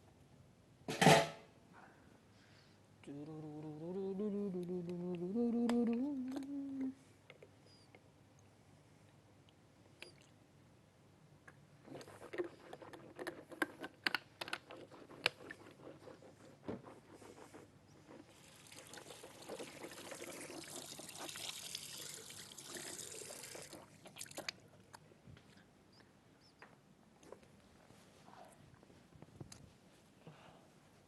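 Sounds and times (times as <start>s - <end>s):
running water: 18.3s - 24.5s.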